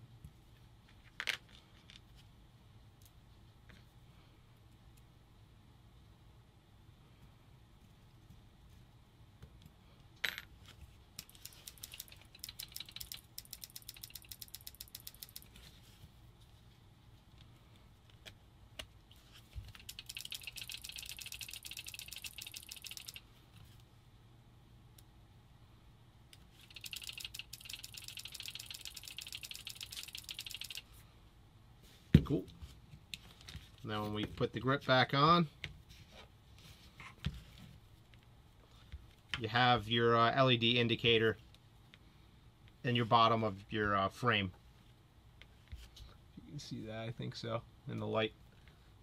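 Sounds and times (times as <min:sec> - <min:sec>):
ratcheting screwdriver clicking: 0:11.2 - 0:15.5, 0:19.8 - 0:23.2, 0:26.6 - 0:30.8.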